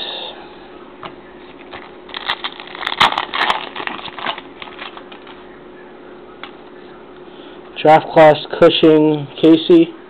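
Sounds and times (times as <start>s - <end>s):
trading card pack rustling: 1.4s - 5.5s.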